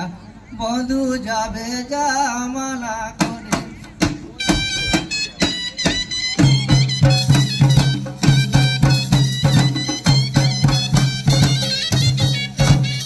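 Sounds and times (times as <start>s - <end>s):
drum strokes: 3.2s - 13.0s
high reed instrument melody: 4.3s - 13.0s.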